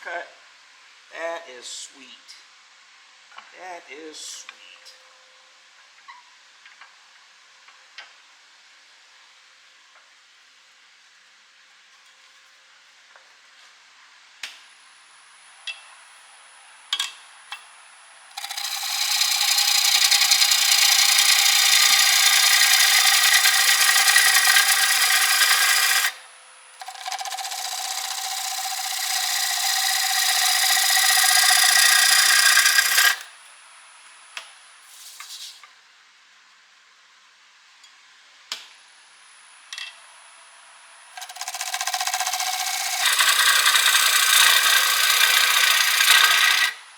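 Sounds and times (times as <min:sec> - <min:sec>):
gouge cutting wood on lathe: 0:18.3 - 0:26.2, 0:26.8 - 0:33.3, 0:41.2 - 0:46.8.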